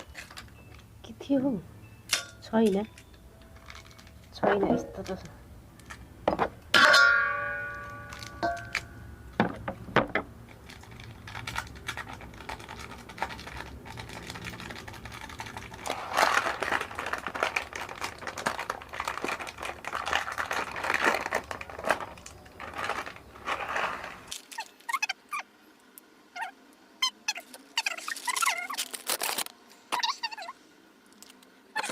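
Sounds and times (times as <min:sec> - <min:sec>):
dry ingredients crunching and crinkling: 0:10.4 - 0:25.0, 0:27.4 - 0:30.2.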